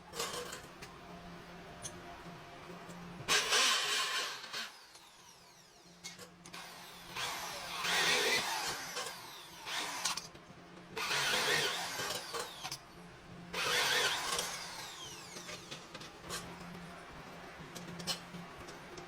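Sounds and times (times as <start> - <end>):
power tool whining: 3.3 - 10.3, 11.0 - 12.8, 13.6 - 15.9.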